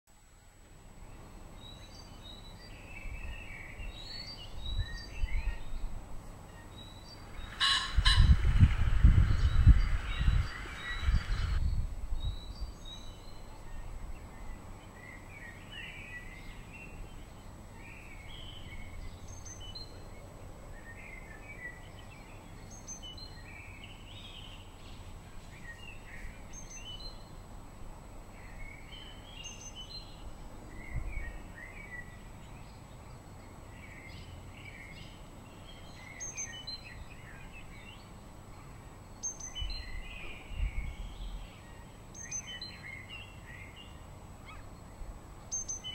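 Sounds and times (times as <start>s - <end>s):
small birds chirping: 1.0s - 45.9s
pheasant crowing: 7.3s - 11.6s
whirring noise: 7.4s - 11.9s.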